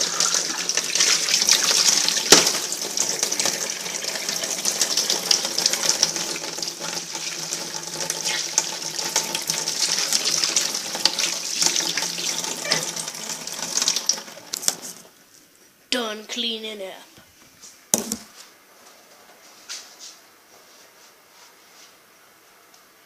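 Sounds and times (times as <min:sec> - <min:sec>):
tap running into a sink: 0:00.0 - 0:03.6
dishes knocking and clinking: 0:18.0 - 0:18.3.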